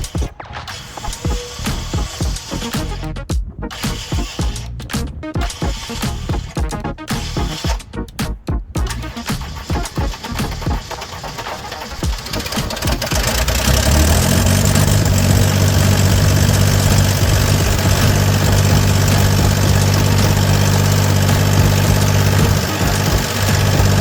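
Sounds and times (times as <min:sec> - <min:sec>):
diesel engine running: 0:08.9 - 0:24.0.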